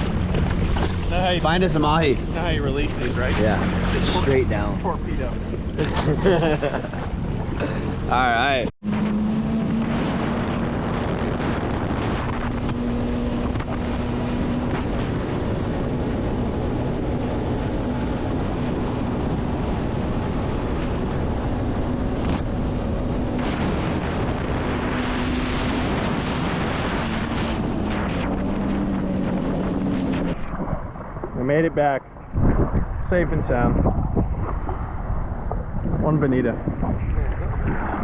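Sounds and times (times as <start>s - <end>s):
rushing water: 0.0s - 16.8s
jet ski engine running: 0.0s - 31.6s
wind noise on microphone: 0.0s - 38.0s.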